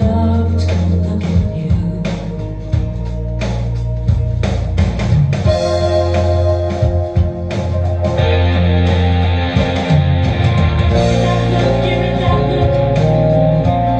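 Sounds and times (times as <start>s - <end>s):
guitar music over loudspeaker: 5.4s - 13.9s.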